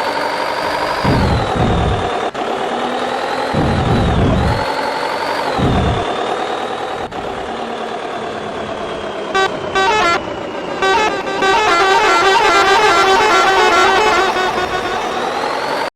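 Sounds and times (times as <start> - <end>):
engine whining: 0.0 - 15.9
musical air horn tune: 9.4 - 10.2, 10.8 - 14.9.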